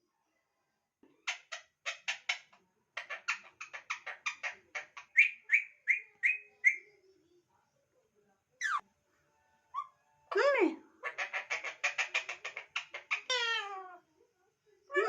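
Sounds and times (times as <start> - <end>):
parakeet chattering calls: 1.2 - 6.8, 11.0 - 13.8
parakeet chirps: 1.2 - 6.9, 11.1 - 13.7.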